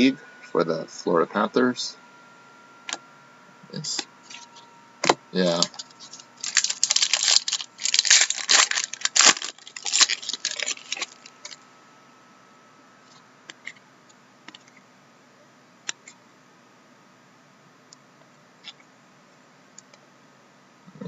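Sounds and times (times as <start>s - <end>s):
wrapper crinkling and tearing: 5.5s - 11.6s.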